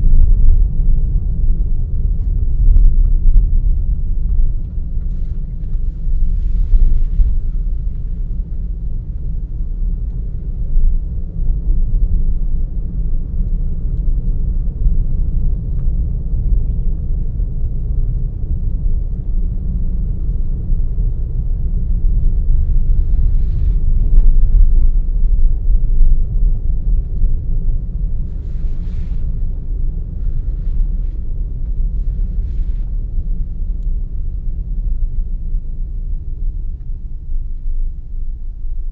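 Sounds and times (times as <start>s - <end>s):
car driving rumble from inside: 0.0s - 38.9s.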